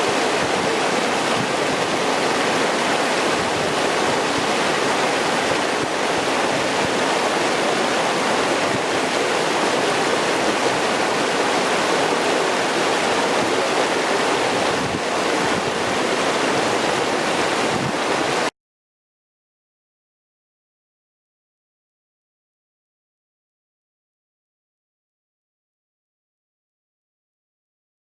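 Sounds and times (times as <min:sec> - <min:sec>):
mountain stream rushing over rocks: 0:00.0 - 0:18.5.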